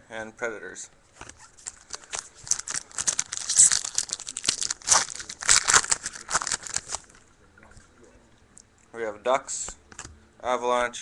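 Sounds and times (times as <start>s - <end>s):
card pack wrapper tearing: 1.2s - 7.2s.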